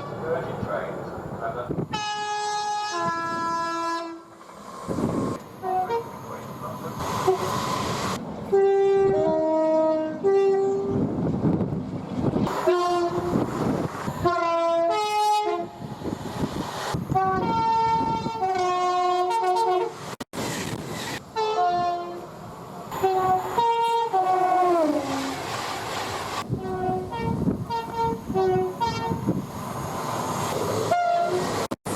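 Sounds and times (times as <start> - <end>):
passing trains running: 0.0 - 31.9
two-tone train horn blasts: 1.9 - 4.3, 5.6 - 6.2, 8.5 - 11.0, 12.5 - 13.4, 14.2 - 15.8, 17.1 - 20.0, 21.3 - 22.2, 22.9 - 25.4, 26.5 - 29.3, 30.9 - 31.6.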